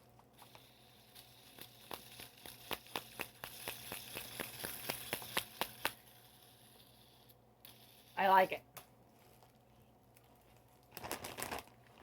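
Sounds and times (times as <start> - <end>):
plastic fidget toy clicking: 0.4 - 8.4.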